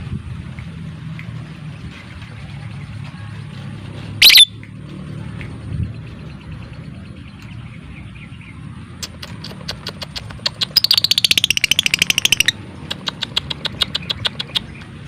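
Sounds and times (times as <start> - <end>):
bird clicking chirps: 4.2 - 4.7, 9.0 - 15.0.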